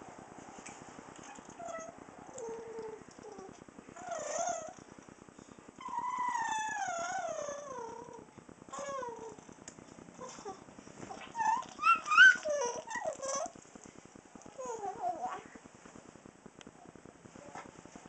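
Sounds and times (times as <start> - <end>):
dog whining: 1.2 - 4.8, 5.8 - 9.4, 10.2 - 13.6
dog howling: 11.2 - 13.5.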